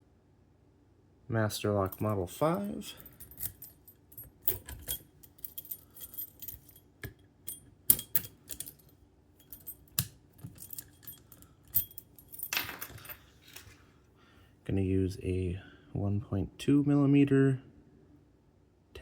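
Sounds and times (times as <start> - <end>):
metallic clicks of padlock handling: 3.0 - 12.5.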